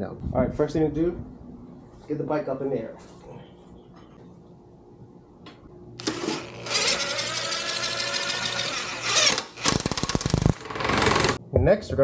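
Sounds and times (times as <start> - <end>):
small electric motor running: 6.0 - 11.4.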